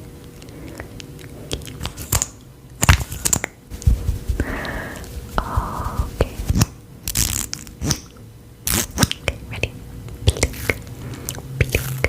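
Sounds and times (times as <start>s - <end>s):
short rustling bursts: 3.7s - 6.6s.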